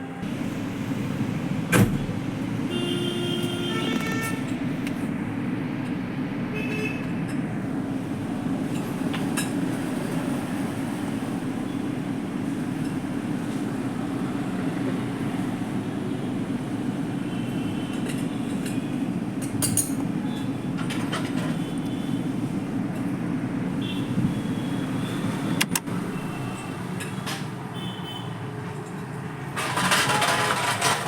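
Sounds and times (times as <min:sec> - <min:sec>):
road traffic rumble: 0:00.0 - 0:31.0.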